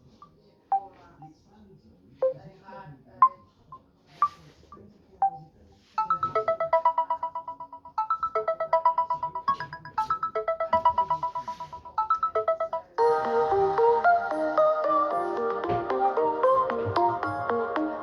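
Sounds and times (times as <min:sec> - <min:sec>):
phone ringtone electronic notes: 0:06.0 - 0:18.0.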